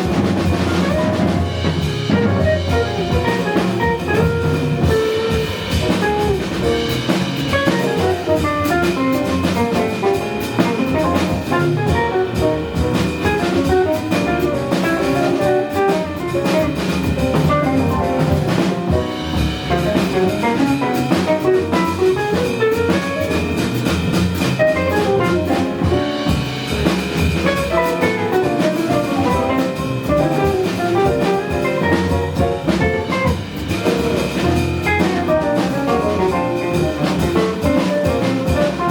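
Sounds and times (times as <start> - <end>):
bass: 0.0 - 38.9
drum kit: 0.0 - 38.9
piano: 0.0 - 38.9
guitar: 4.7 - 5.7.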